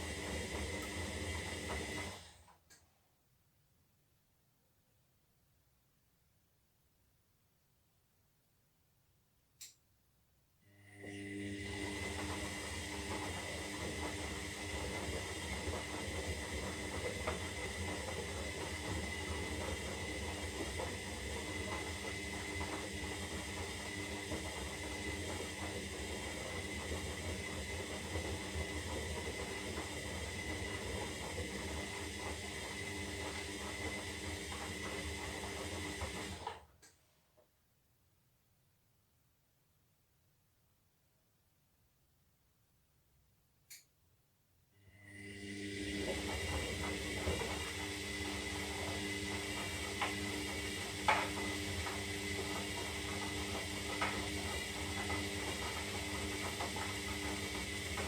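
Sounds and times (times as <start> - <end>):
washing machine motor humming: 0.0 - 2.4, 10.8 - 36.7, 44.9 - 58.0.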